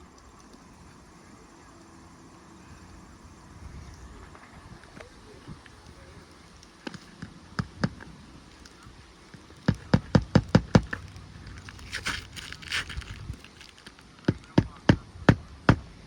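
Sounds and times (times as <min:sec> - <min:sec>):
scraping rustle: 0:03.8 - 0:14.3
hammer striking nails: 0:09.6 - 0:11.0.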